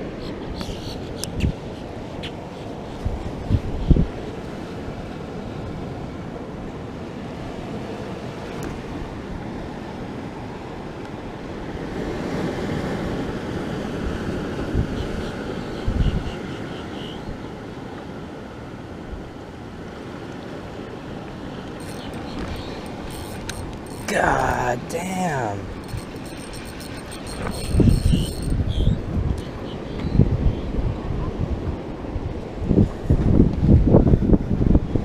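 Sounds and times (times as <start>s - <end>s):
ocean surf: 0.0s - 35.0s
wind buffeting microphone: 3.0s - 4.3s, 25.7s - 35.0s.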